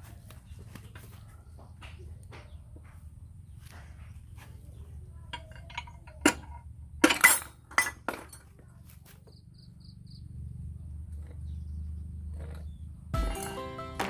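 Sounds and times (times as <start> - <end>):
metal tools clinking and knocking: 5.3 - 8.6.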